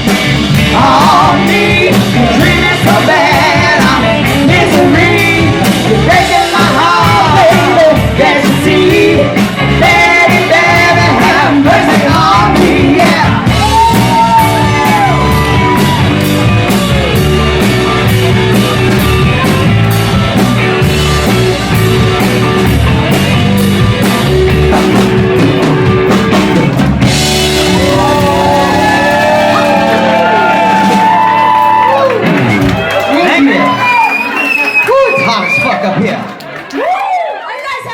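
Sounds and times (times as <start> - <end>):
steady drum beat: 0.0 - 34.4
rock band playing: 0.0 - 36.7
lead singer singing: 0.5 - 15.9.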